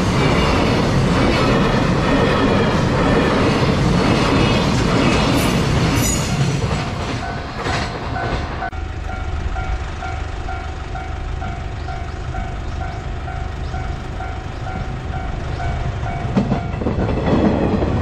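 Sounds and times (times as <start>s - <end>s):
train rumble and wheel clatter: 0.0s - 18.0s
crossing warning bell dinging: 5.9s - 18.0s.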